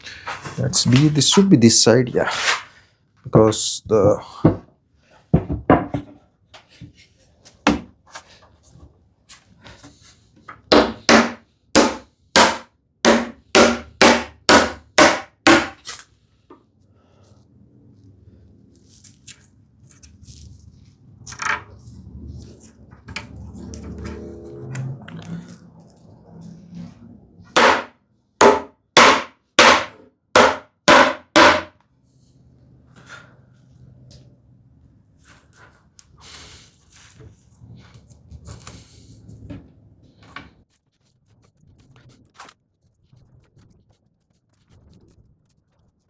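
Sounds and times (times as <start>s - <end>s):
hammer knocking wood joints: 7.7s - 7.9s, 10.7s - 15.8s, 27.6s - 31.7s
hammer blows on wood block: 27.6s - 31.7s.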